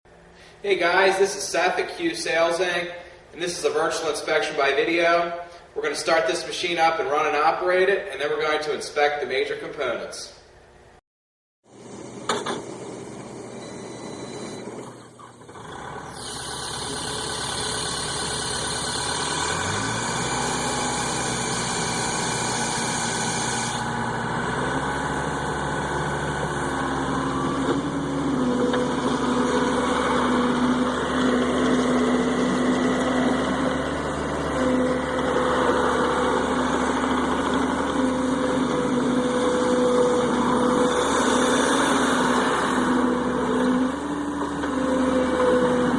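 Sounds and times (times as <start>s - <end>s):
diesel engine starting and revving: 11.7s - 45.9s.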